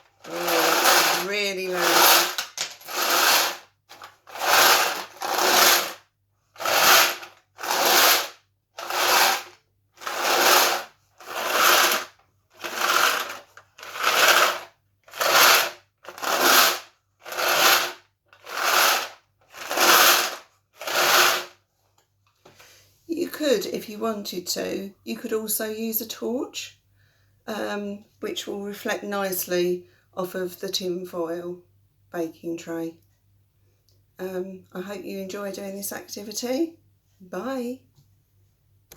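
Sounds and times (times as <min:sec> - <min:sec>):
glass pebbles rattling on tin foil tray: 0:00.3 - 0:03.4.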